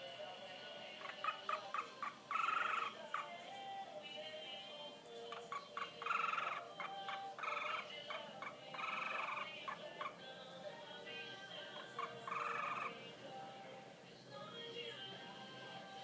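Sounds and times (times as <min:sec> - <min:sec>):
harsh buzzy cockatiel calls: 0:01.0 - 0:03.3, 0:05.4 - 0:09.9, 0:11.9 - 0:13.0
cockatiel chirping: 0:01.0 - 0:03.4, 0:05.2 - 0:10.0, 0:11.7 - 0:13.0.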